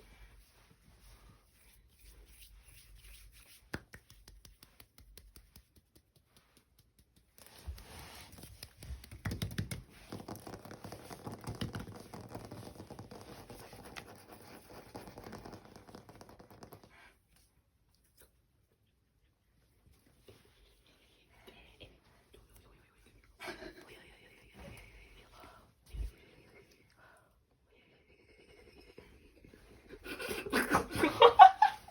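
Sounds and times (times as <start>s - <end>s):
tapping and scratching: 8.4s - 16.9s.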